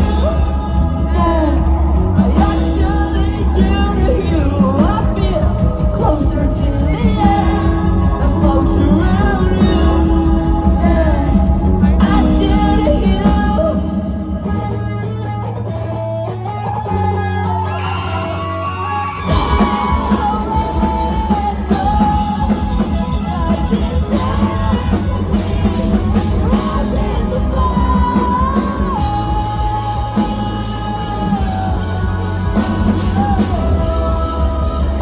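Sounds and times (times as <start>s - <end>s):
live rock band playing: 0.0s - 35.0s
person singing and yelling: 16.6s - 35.0s.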